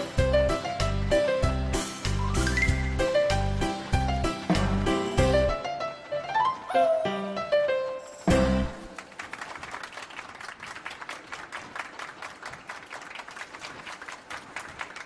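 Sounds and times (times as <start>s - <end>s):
applause: 8.7s - 15.0s.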